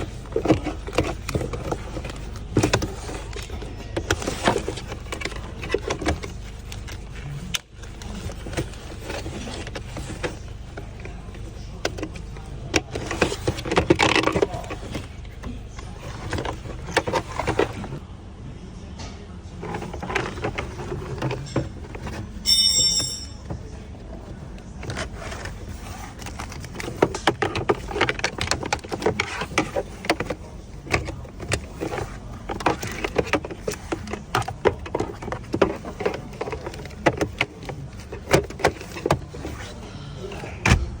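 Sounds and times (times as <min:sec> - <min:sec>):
plastic clicks and rattles: 0:24.8 - 0:39.7.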